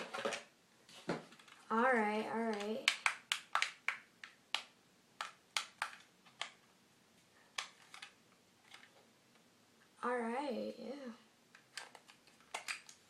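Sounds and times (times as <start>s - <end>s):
plastic packaging clicking and tapping: 1.1s - 1.7s, 2.4s - 6.7s, 7.5s - 9.0s, 11.5s - 13.0s.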